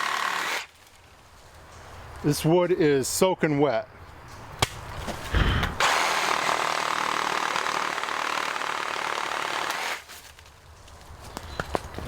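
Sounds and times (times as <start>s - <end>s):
reciprocating saw cutting wood: 0.0s - 0.7s, 5.8s - 10.1s.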